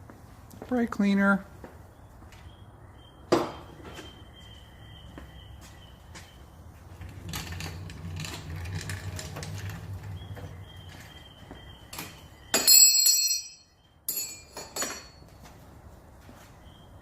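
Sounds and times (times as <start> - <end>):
low hum: 6.4 - 12.1.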